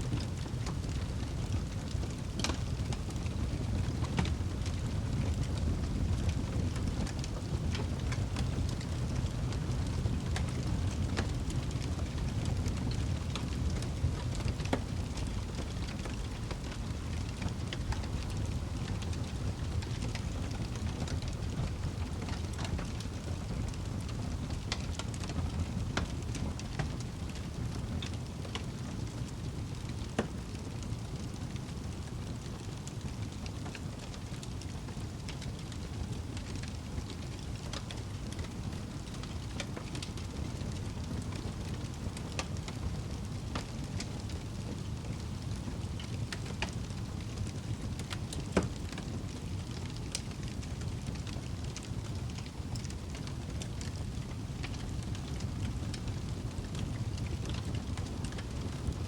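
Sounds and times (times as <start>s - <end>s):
wood fire crackling and popping: 0.0s - 59.0s.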